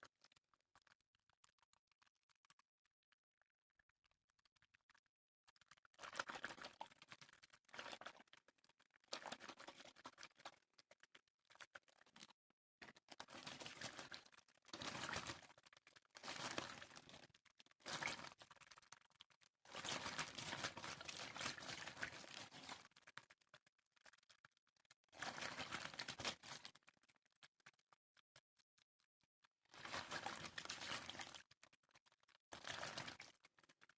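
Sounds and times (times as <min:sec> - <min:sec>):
water splashing and swishing: 0:12.9 - 0:19.0, 0:19.6 - 0:23.1, 0:25.1 - 0:26.7, 0:29.6 - 0:33.7.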